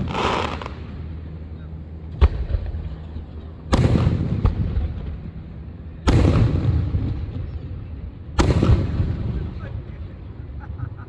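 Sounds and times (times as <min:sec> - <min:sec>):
fireworks bursting: 0:00.0 - 0:01.1, 0:08.4 - 0:09.5
rumble with crackle: 0:00.0 - 0:03.5.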